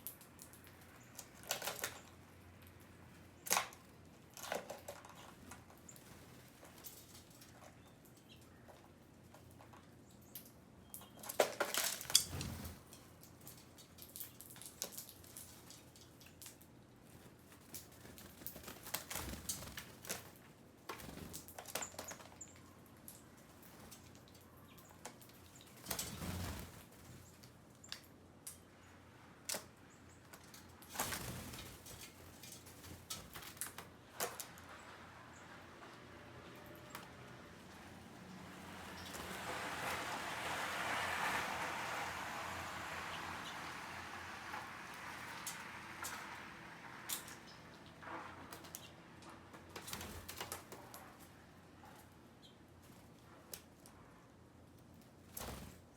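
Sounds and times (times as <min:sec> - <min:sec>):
bird wings fluttering: 0:17.5 - 0:22.3, 0:25.7 - 0:27.4, 0:30.9 - 0:34.3, 0:55.3 - 0:55.9.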